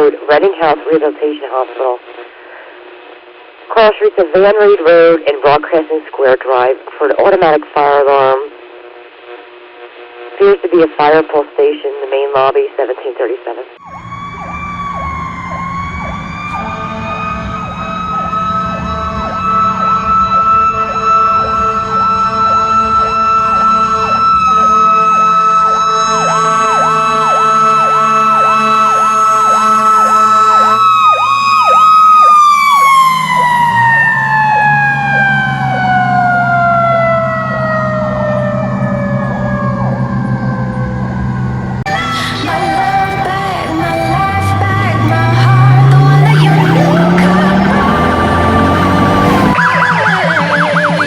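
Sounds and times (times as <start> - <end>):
electronic siren cycling rapidly: 13.8 - 41.8, 45.1 - 51.0
mechanical siren wailing: 13.8 - 51.0
truck diesel engine rumble: 13.8 - 51.0
air horn chord: 16.4 - 31.2.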